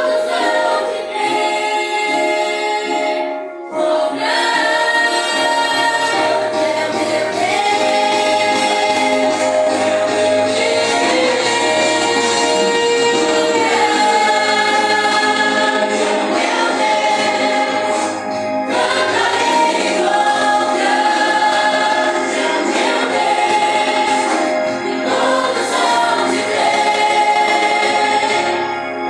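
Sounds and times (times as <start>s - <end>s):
group singing gospel: 0.0s - 29.0s
instrumental backing: 0.0s - 29.0s.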